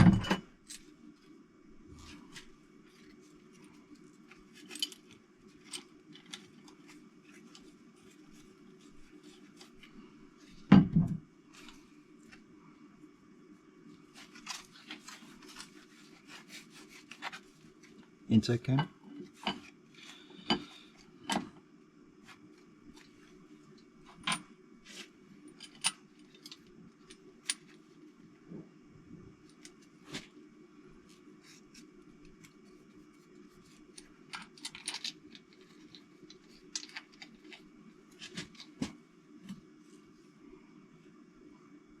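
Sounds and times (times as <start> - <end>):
steady low hum: 0.0 - 42.0
metal engine parts clinking: 34.3 - 35.2.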